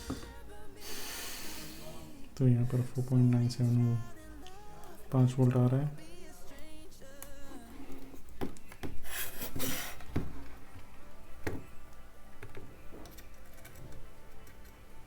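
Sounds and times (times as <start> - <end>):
scratchy rub: 9.0 - 10.5.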